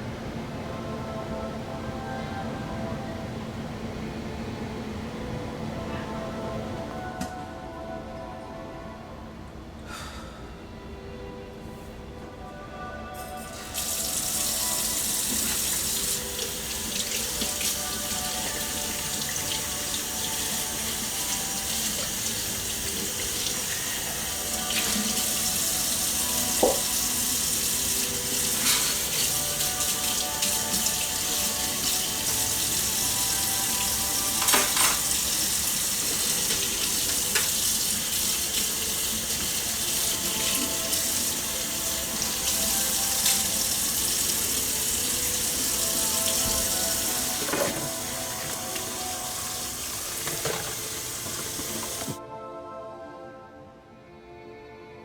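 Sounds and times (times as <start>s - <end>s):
faint background music: 0.0s - 55.0s
water running: 13.2s - 52.2s.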